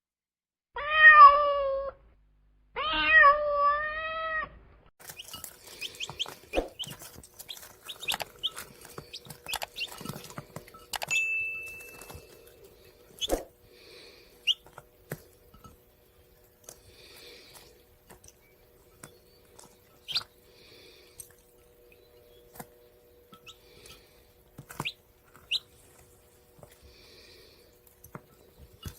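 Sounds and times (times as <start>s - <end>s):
cat meowing: 0.8s - 2.0s, 2.8s - 4.6s
chickens clucking: 5.0s - 11.1s, 11.9s - 13.6s, 14.4s - 15.8s, 16.6s - 26.8s.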